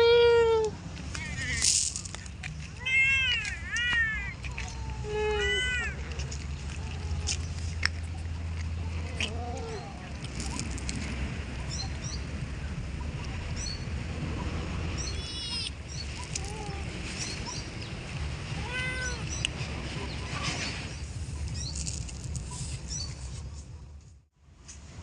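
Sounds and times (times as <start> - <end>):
cats meowing: 2.6 - 7.5, 15.2 - 17.0, 18.5 - 19.5.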